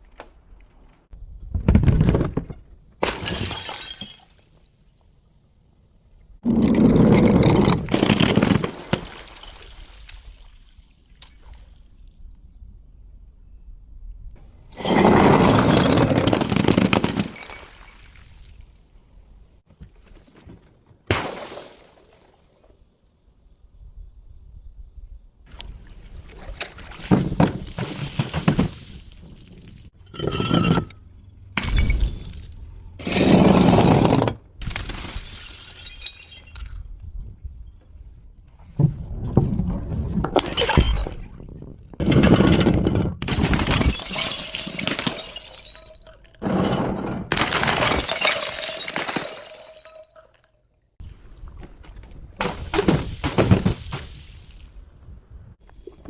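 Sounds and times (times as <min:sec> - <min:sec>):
glass bottles breaking: 0:03.0 - 0:04.6, 0:07.7 - 0:09.8, 0:14.8 - 0:18.3, 0:31.6 - 0:37.0, 0:42.0 - 0:50.6.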